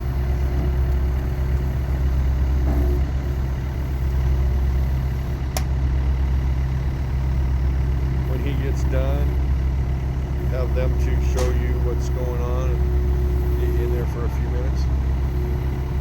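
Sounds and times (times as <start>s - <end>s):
diesel engine droning: 0.0s - 16.0s
sharp click: 11.4s - 11.6s.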